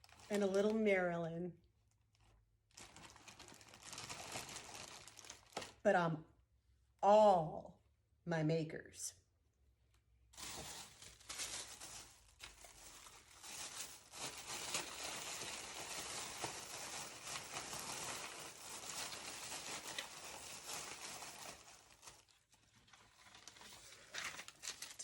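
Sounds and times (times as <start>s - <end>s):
packaging crinkling and rustling: 0.0s - 0.8s, 2.0s - 5.8s, 10.4s - 25.0s.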